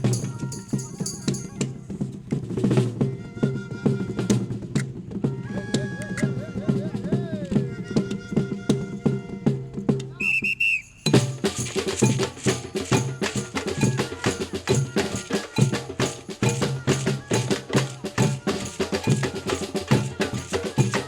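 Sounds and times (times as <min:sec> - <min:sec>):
percussion group drumming: 0:00.0 - 0:03.3, 0:10.8 - 0:21.0
shrill whistle blasts: 0:10.2 - 0:11.3.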